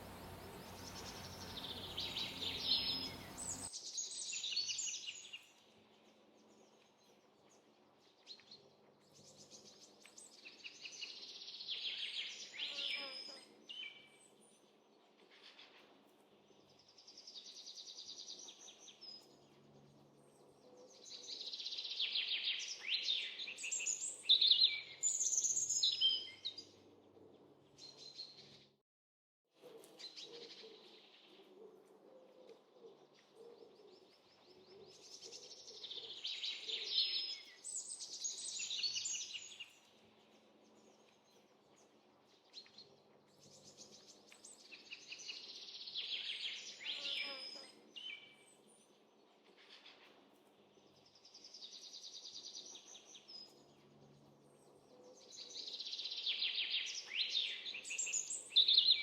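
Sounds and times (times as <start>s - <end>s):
songbirds chirping and singing: 0.0s - 5.5s, 29.8s - 59.0s.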